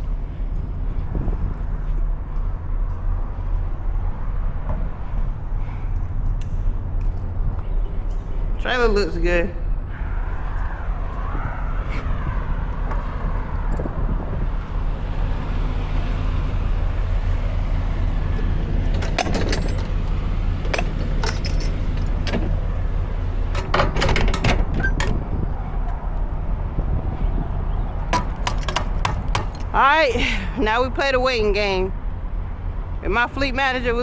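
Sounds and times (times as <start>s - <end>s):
truck diesel engine idling: 14.7s - 23.6s
metallic jingling and clinking: 14.7s - 25.4s, 28.0s - 29.8s.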